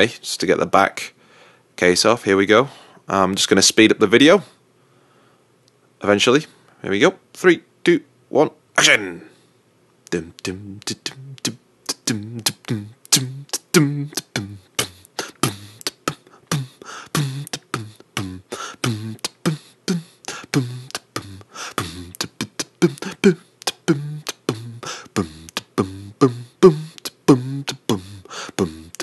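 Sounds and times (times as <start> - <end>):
garbled voice-like chirps: 10.1 - 29.0.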